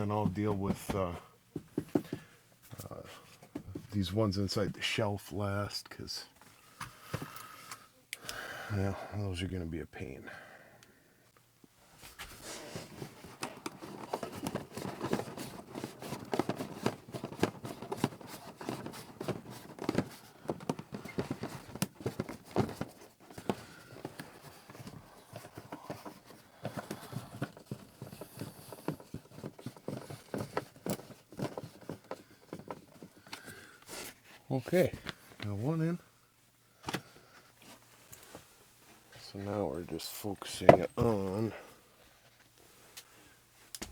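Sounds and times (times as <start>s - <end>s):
metal and plastic parts handled: 12.8s - 34.2s.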